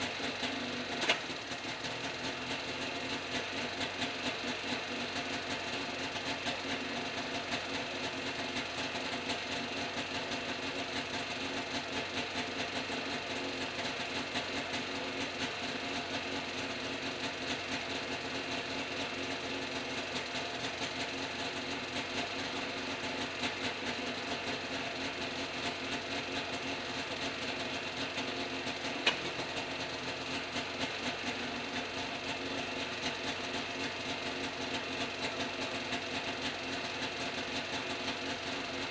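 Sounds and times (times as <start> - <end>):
small engine running steadily: 0.0 - 38.9
sharp click: 1.0 - 1.3, 29.0 - 29.2.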